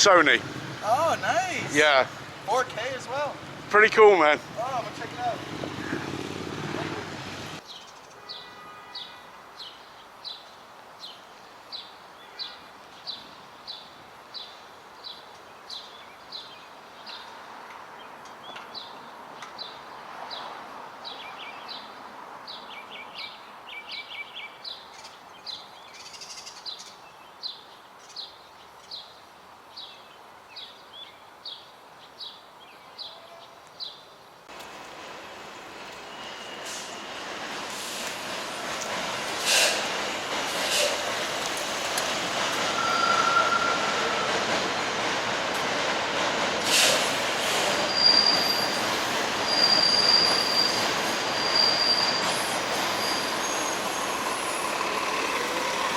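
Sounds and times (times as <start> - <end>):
city background hum: 0.0 - 29.0, 31.7 - 42.8
songbird chirping: 7.6 - 34.5.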